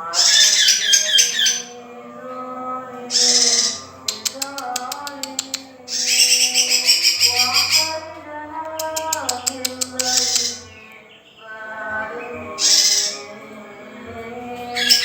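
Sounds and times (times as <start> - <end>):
bird twittering and clicking: 0.2 - 1.7, 3.1 - 11.4, 12.5 - 13.3.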